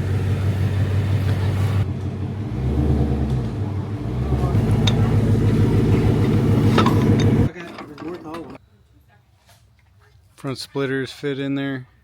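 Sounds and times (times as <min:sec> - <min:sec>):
car engine low rumble: 0:00.0 - 0:07.5.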